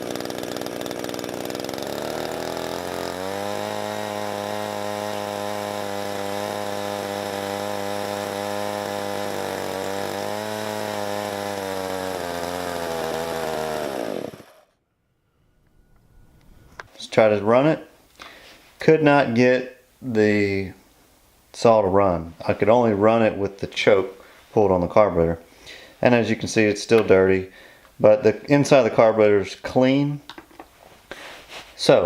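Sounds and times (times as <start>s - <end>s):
chainsaw engine running: 0.0s - 14.7s.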